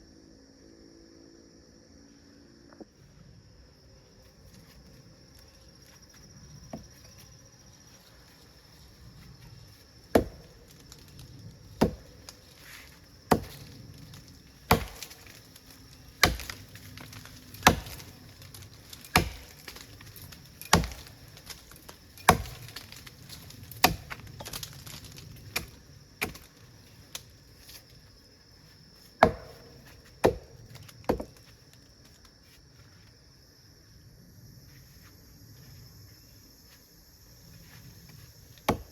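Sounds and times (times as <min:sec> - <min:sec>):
blade chopping into wood: 0:10.1 - 0:10.5, 0:11.8 - 0:12.1, 0:13.3 - 0:13.7, 0:14.6 - 0:15.4, 0:16.2 - 0:16.6, 0:17.2 - 0:18.1, 0:19.0 - 0:19.9, 0:20.6 - 0:21.2, 0:22.2 - 0:23.0, 0:23.8 - 0:25.0, 0:29.2 - 0:30.5, 0:31.1 - 0:31.4, 0:38.6 - 0:38.9.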